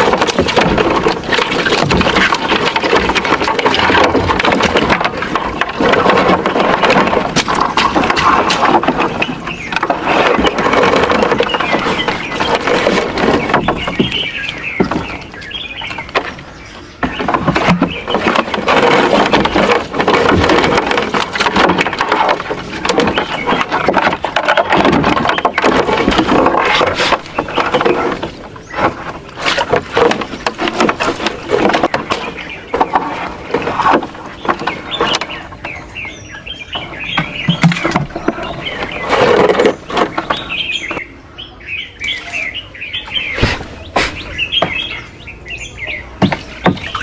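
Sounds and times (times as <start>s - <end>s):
rustling and handling noise: 0.0s - 41.2s
small birds chirping: 0.0s - 47.0s
sharp knocks: 43.3s - 45.1s, 46.2s - 47.0s.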